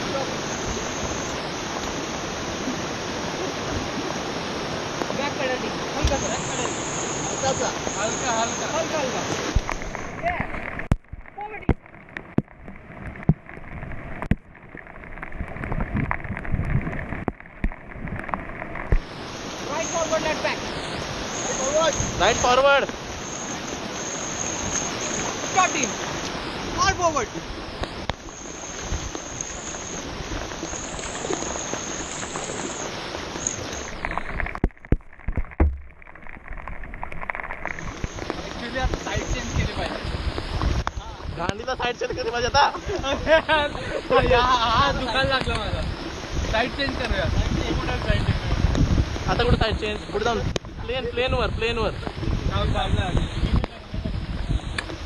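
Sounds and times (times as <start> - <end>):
paddles splashing in water: 0.0 - 55.0
rushing river water: 0.0 - 55.0
sharp knocks: 34.6 - 35.9.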